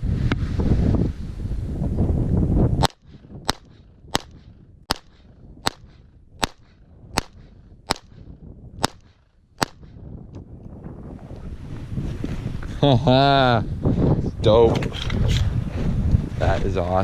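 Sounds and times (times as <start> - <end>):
faint wind: 0.0 - 17.0
gunshots: 2.8 - 10.0.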